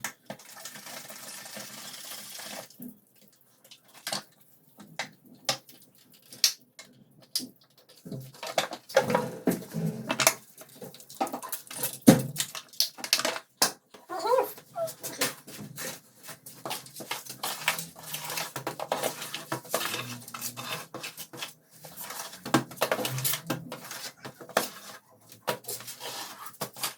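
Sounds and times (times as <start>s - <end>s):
hard objects knocking and scraping: 7.8s - 26.9s.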